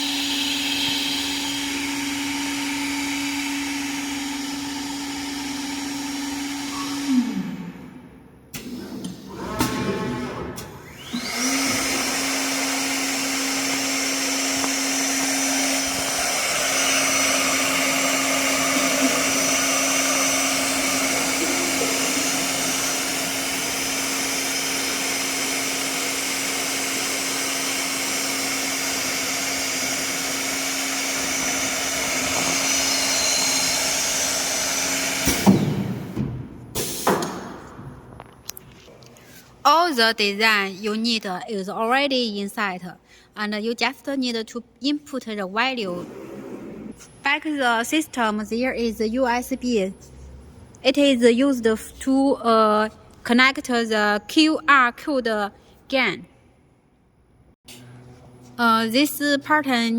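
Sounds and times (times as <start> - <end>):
spindle motor hum and whine: 10.8 - 35.9.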